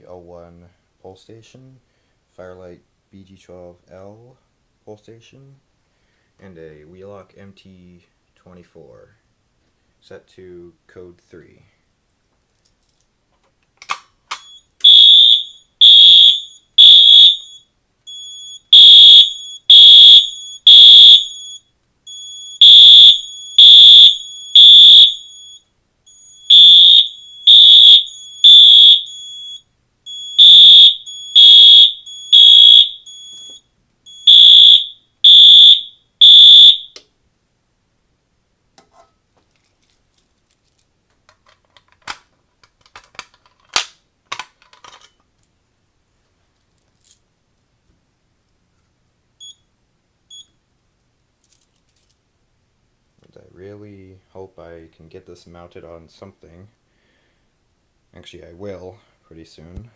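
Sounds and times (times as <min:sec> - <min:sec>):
fire alarm horn blasts: 0:14.5 - 0:37.0.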